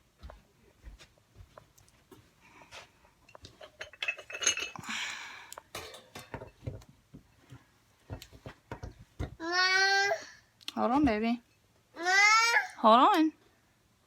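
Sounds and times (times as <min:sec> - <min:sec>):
ceramic dish clinking: 0:03.6 - 0:04.8.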